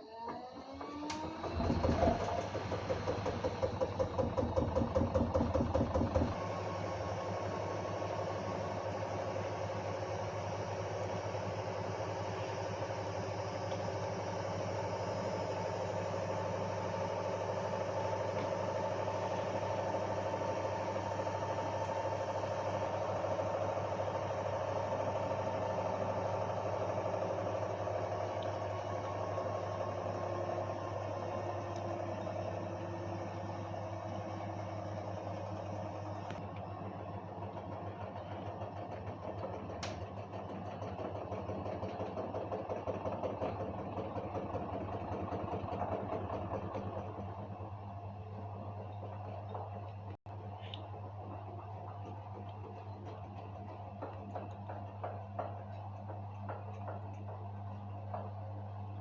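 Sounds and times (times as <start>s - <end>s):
washing machine motor whine: 0.0s - 59.0s
washing machine drum thumping: 1.1s - 6.4s, 39.5s - 47.0s.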